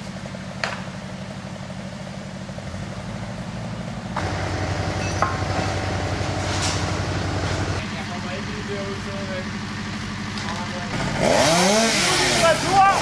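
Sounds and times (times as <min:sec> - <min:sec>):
engine idling: 0:00.0 - 0:13.0
steady whine: 0:04.0 - 0:13.0.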